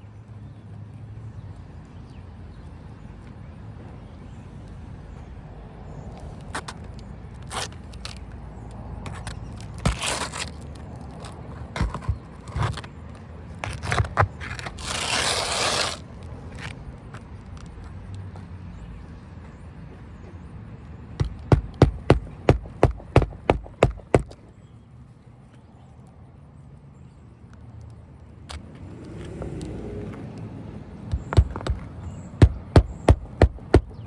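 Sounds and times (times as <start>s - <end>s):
roof shingles scraping and crackling: 9.6s - 13.0s, 13.6s - 16.7s
hammer striking nails: 21.2s - 24.4s, 31.1s - 34.0s.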